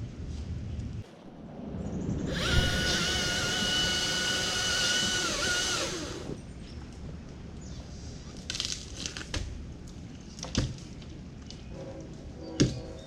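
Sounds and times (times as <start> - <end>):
chainsaw running: 2.3 - 6.4.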